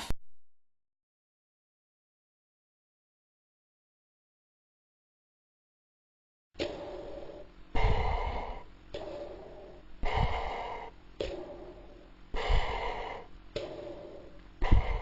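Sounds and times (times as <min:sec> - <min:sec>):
mechanical respirator breathing: 0:06.6 - 0:15.0.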